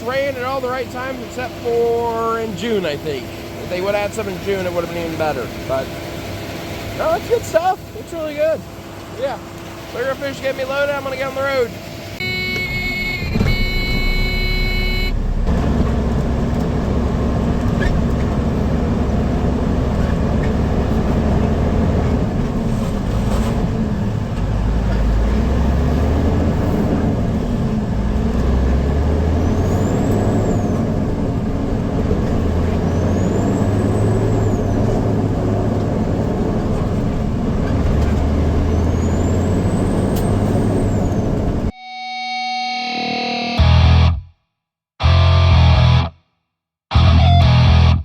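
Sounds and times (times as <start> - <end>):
truck diesel engine accelerating: 0.0 - 41.7
high whistle: 12.2 - 15.2, 41.7 - 43.0.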